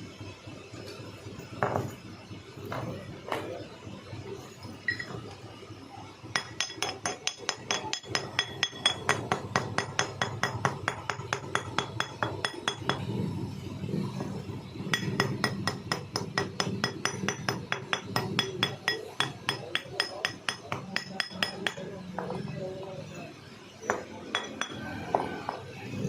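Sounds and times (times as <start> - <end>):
hammer striking metal: 6.4 - 13.2, 14.9 - 22.5, 23.8 - 25.8.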